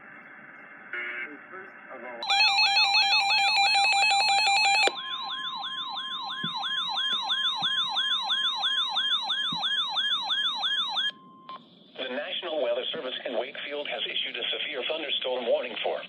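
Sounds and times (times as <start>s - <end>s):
steady alert tone: 2.2s - 11.1s
sweeping siren-like alert tone: 2.2s - 11.4s.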